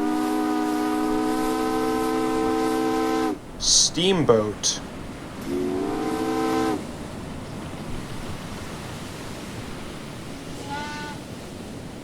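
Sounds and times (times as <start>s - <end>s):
steam whistle blowing: 0.0s - 3.4s, 5.4s - 6.9s, 10.6s - 11.3s
rushing water: 0.0s - 12.0s
high whistle toot: 10.6s - 11.2s.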